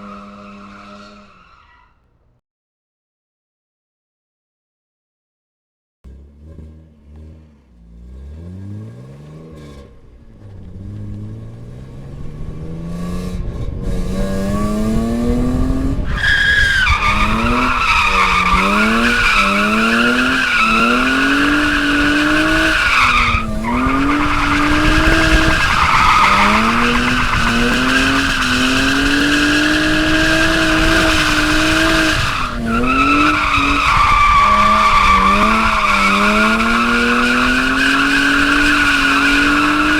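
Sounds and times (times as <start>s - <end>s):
car engine revving: 6.1s - 39.9s
tyres squealing: 16.1s - 39.9s.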